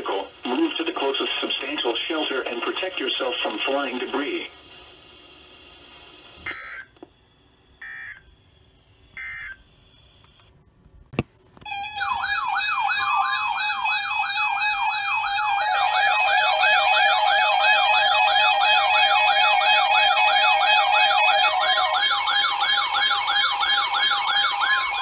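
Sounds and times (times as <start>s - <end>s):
electronic sirens yelping: 11.7s - 25.0s.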